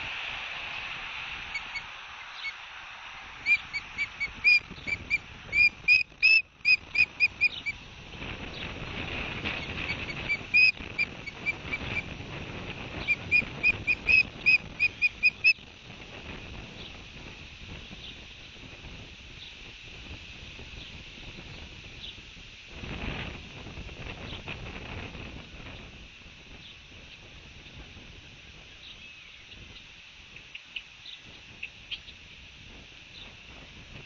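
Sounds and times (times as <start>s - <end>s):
wind noise: 0.0s - 30.6s, 31.2s - 34.0s
osprey whistled chirps: 1.5s - 2.6s, 3.4s - 7.8s, 9.6s - 12.1s, 13.0s - 15.6s.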